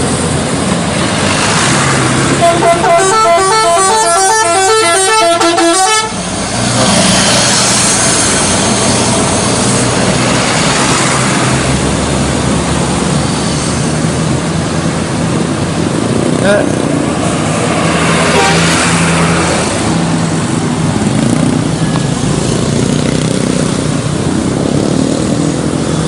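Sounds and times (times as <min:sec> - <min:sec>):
loud rush of noise: 0:00.0 - 0:05.4, 0:06.0 - 0:26.0
engine hum: 0:00.0 - 0:26.0
multi-tone bus horn tune: 0:02.3 - 0:06.3, 0:18.2 - 0:19.0.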